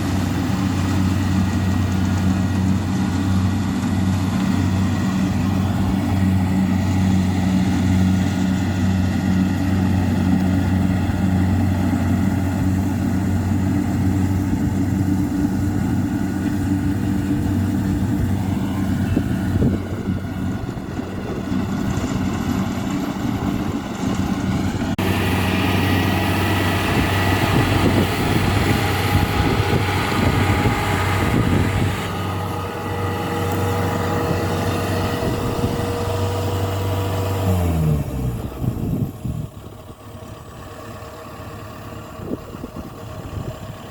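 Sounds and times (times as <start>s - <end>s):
combine harvester engine running: 0.0s - 43.9s.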